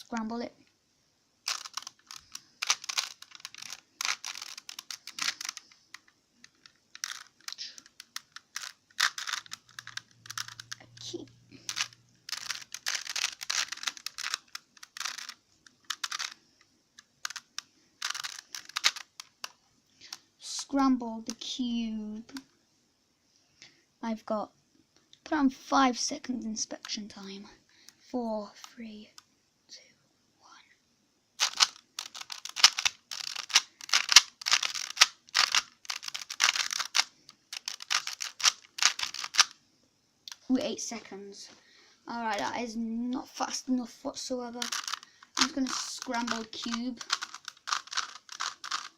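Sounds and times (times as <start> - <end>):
puzzle cube clacking clicks: 1.5 - 16.4, 17.0 - 20.2, 31.4 - 39.6, 44.5 - 48.9.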